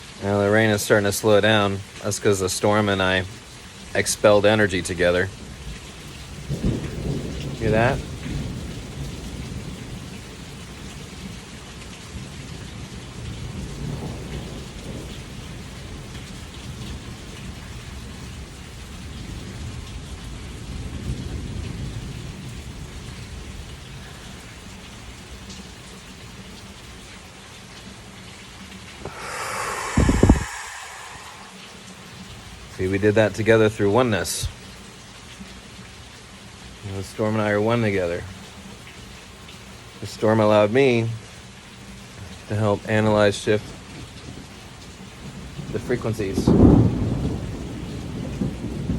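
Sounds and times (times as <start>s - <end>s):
steady rain: 0.0s - 48.9s
thunder rumbling: 29.0s - 32.5s, 45.3s - 48.9s.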